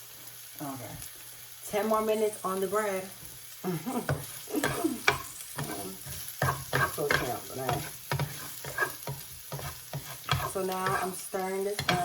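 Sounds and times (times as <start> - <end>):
vegetables sizzling in oil: 0.0 - 12.0
spoon scraping frying pan: 4.0 - 12.0.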